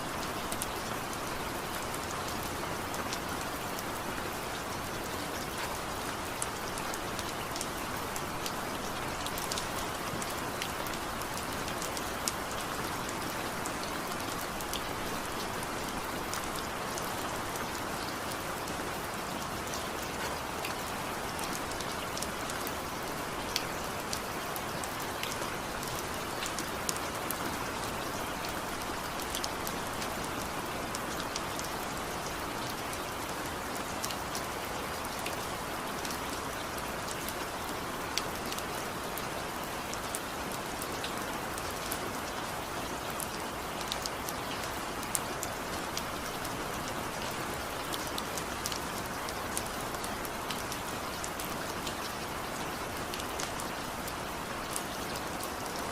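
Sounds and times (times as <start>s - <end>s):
steady rain hiss: 0.0s - 55.9s
raindrops ticking on hard surface: 43.8s - 52.1s.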